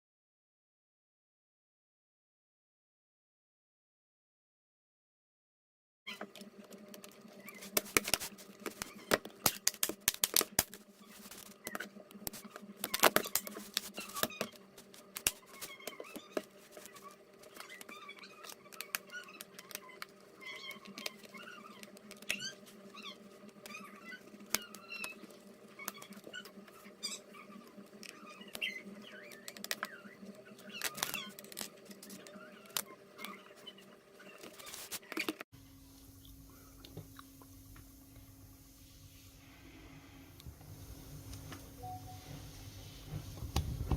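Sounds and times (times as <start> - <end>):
steady low hum: 35.6 - 43.9.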